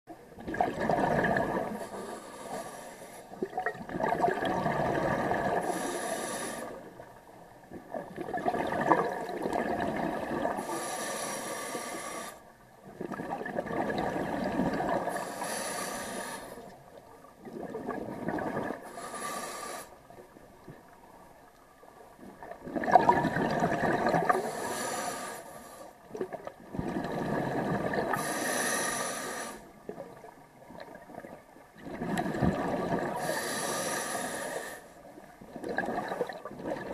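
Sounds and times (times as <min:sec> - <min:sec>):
exhaled air bubbling: 0:00.3 - 0:07.0, 0:07.6 - 0:21.0, 0:21.7 - 0:25.0, 0:26.0 - 0:36.9
regulator inhale hiss: 0:01.8 - 0:03.4, 0:05.6 - 0:07.0, 0:10.6 - 0:12.5, 0:15.1 - 0:16.8, 0:18.8 - 0:20.2, 0:24.3 - 0:26.1, 0:28.1 - 0:29.8, 0:33.2 - 0:35.0.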